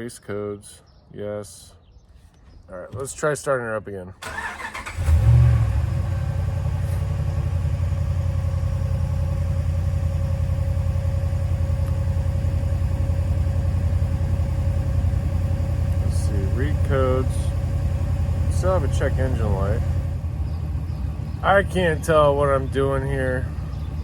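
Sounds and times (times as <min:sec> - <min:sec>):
engine starting and revving: 0:04.2 - 0:08.2, 0:16.1 - 0:24.0
engine idling: 0:04.2 - 0:24.0.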